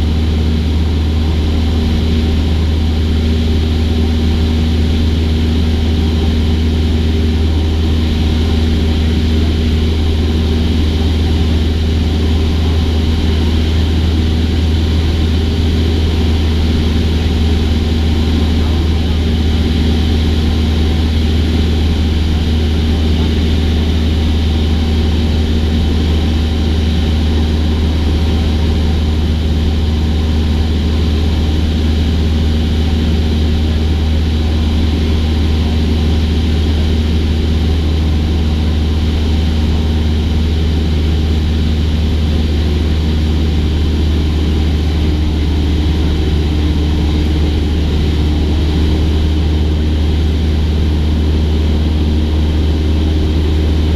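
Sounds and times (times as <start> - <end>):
propeller plane engine droning: 0.0 - 53.9.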